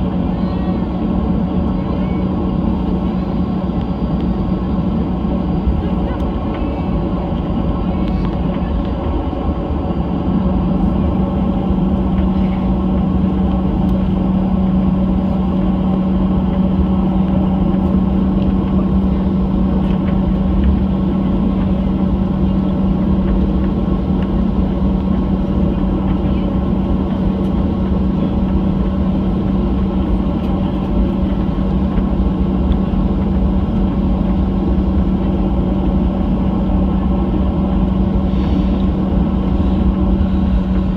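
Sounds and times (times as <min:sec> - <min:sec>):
aircraft cabin drone: 0:00.0 - 0:40.9.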